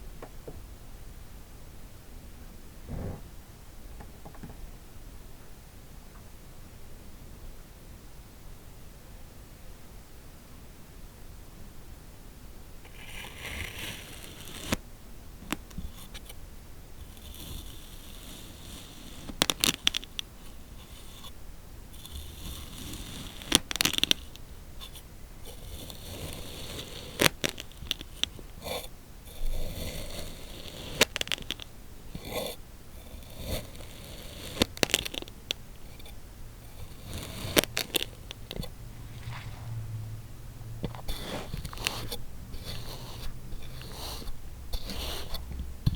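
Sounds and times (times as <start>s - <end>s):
blade scraping through sand: 29.5s - 31.6s, 33.1s - 35.3s, 35.9s - 39.8s, 40.9s - 45.4s
sharp crisp crackles: 33.4s - 36.1s, 36.7s - 39.8s.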